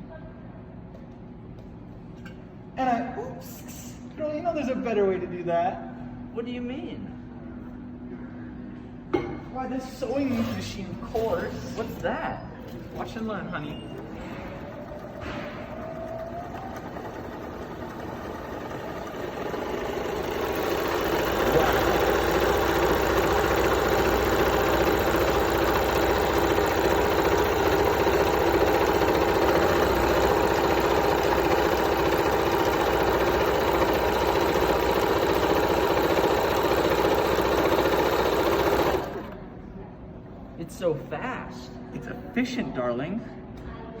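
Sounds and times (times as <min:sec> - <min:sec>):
sewing machine whirring: 0:10.3 - 0:39.6.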